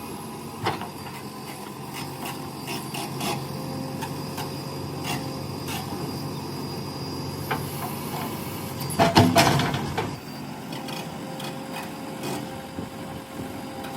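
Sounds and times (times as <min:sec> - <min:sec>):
diesel engine running: 0:00.0 - 0:13.9
clattering knocks and scraping: 0:09.0 - 0:10.2.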